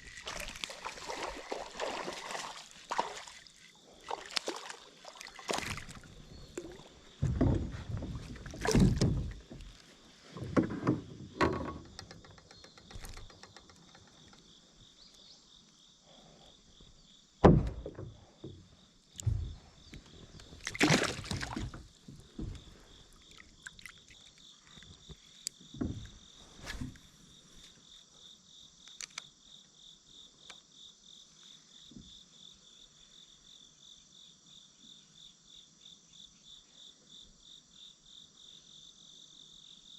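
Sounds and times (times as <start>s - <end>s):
crickets trilling: 0.0s - 39.9s
handling knocks and rustles: 5.4s - 14.2s, 25.8s - 27.2s
sharp thump: 17.4s - 18.1s.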